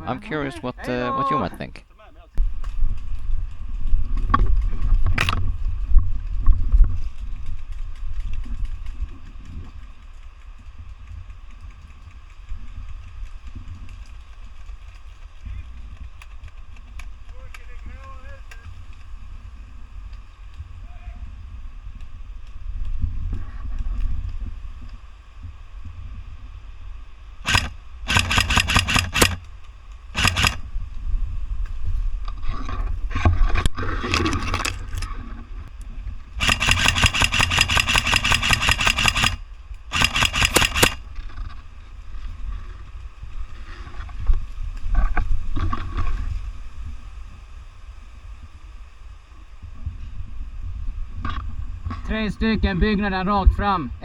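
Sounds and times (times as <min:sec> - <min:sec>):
wind rumble on microphone: 0:01.4 - 0:28.1, 0:29.0 - 0:40.0, 0:40.8 - 0:54.0
airsoft guns firing rapid bursts: 0:27.5 - 0:29.5, 0:30.2 - 0:30.7, 0:36.4 - 0:41.1.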